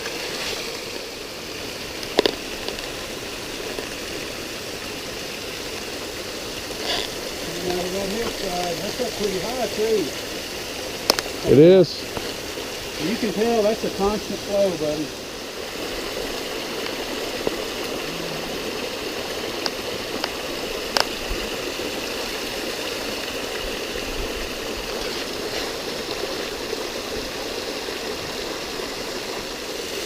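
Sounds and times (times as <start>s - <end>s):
waterfall and creek splashing: 0.0s - 30.0s.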